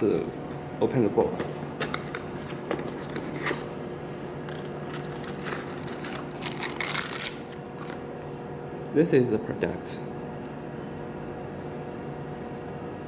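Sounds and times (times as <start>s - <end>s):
packaging scraping and rustling: 2.0s - 8.0s.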